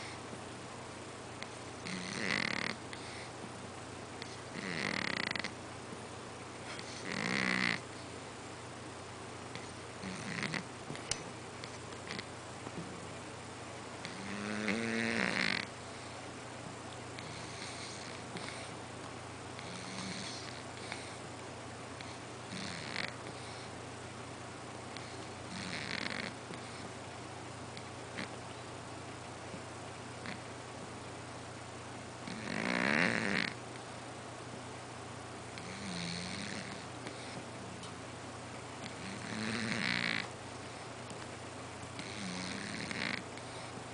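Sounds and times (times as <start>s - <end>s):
cat snoring: 1.8s - 3.3s, 4.2s - 5.5s, 6.7s - 7.8s, 9.5s - 10.7s, 12.0s - 12.3s, 14.0s - 15.7s, 17.2s - 18.7s, 19.6s - 21.2s, 22.0s - 23.7s, 25.0s - 26.9s, 32.2s - 33.6s, 35.6s - 37.4s, 38.8s - 40.3s, 42.0s - 43.7s.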